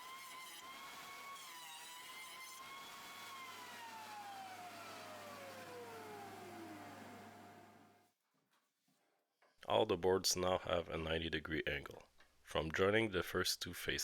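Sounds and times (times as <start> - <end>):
jointer whine winding down: 2.6 - 8.0.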